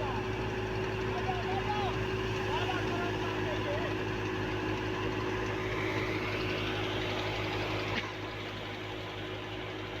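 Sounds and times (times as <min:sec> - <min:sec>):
thresher machine hum: 0:00.0 - 0:10.0.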